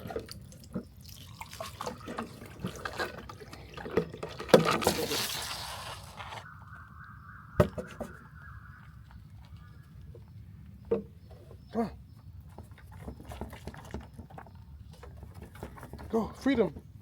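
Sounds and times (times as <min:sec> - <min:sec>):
water trickling and splashing: 0:00.0 - 0:06.5.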